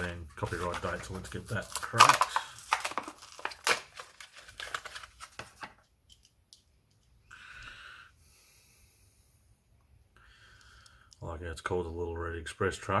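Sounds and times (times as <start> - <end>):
plastic blister card clicks and crinkles: 0.4 - 6.6.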